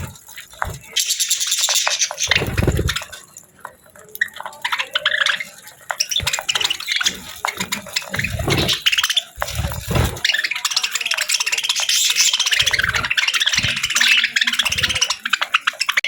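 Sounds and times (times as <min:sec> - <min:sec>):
budgies chirping and warbling: 0:00.0 - 0:16.0.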